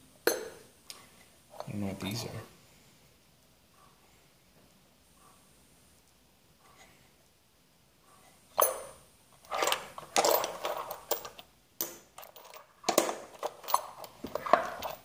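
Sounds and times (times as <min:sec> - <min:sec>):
metal tools clinking in drawer: 0:08.6 - 0:15.0.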